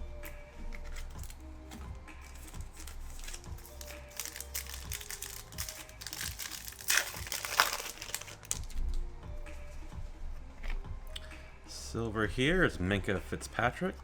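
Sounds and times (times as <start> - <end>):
foil wrapper crinkling: 0.8 - 1.4, 2.2 - 8.9.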